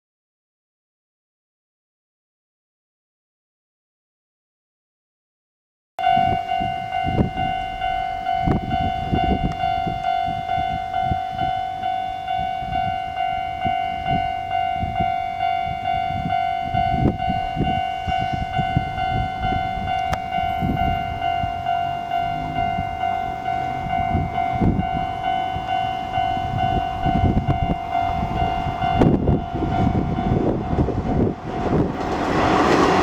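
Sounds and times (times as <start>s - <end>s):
level crossing warning bell: 6.0s - 33.0s
low rumble: 17.1s - 33.0s.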